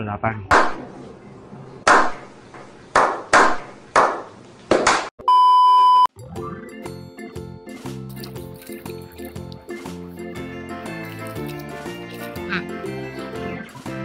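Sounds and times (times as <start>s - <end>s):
electronic beep: 5.2s - 6.1s
background music: 6.2s - 14.0s.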